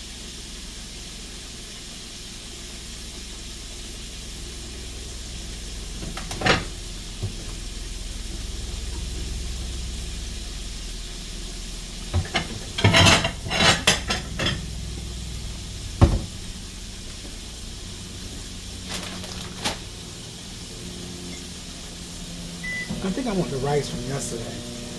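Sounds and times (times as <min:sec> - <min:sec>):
steady hiss: 0:00.0 - 0:24.9
pots and utensils clattering: 0:05.9 - 0:07.6, 0:12.1 - 0:15.4.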